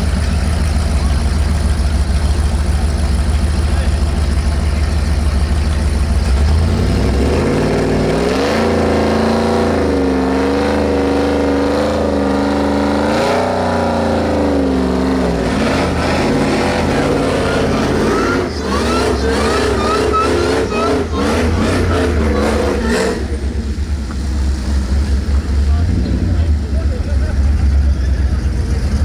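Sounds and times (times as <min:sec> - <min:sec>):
engine revving hard: 0:06.2 - 0:23.9, 0:25.7 - 0:29.0.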